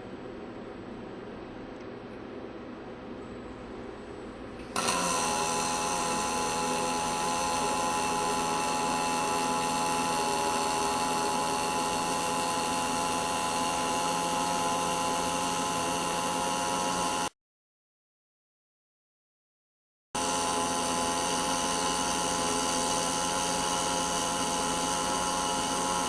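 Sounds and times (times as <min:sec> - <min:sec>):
welding arc hissing: 0:04.8 - 0:15.4.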